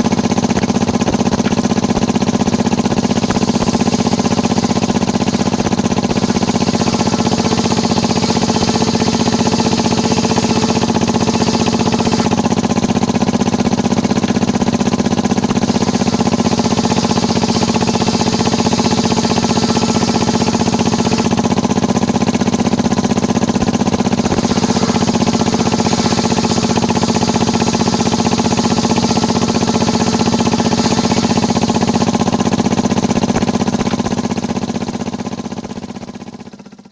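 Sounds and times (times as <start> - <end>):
sawmill engine running: 0.0 - 36.8
saw hissing: 2.8 - 12.8, 15.2 - 21.5, 23.9 - 32.5.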